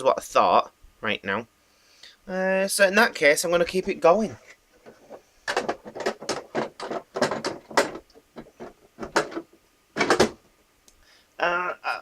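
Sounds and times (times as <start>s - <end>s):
hard plastic knocks and clicks: 4.8s - 10.5s.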